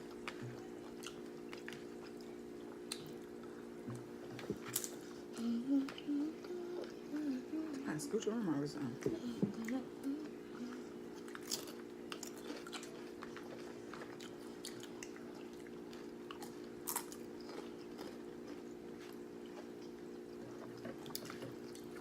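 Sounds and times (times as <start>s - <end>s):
steady low hum: 0.0s - 22.0s
crunching chips: 11.2s - 15.2s, 15.9s - 19.8s.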